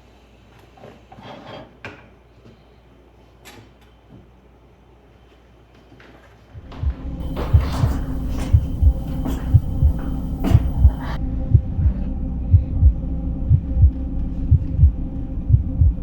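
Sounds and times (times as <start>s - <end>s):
heartbeat-like double thump: 6.6s - 16.0s
steady low hum: 6.6s - 16.0s.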